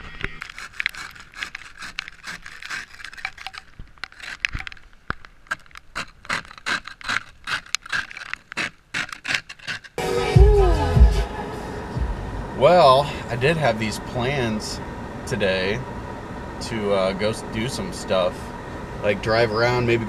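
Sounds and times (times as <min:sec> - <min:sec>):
scraper scraping ice off car: 0:00.4 - 0:04.6, 0:05.5 - 0:10.0.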